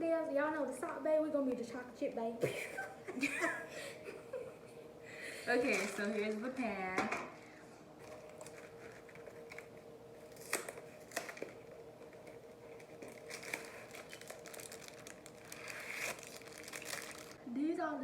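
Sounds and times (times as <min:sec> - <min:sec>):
faint steady hum: 0:00.0 - 0:18.0
packaging crinkling: 0:05.6 - 0:06.6, 0:08.0 - 0:17.4.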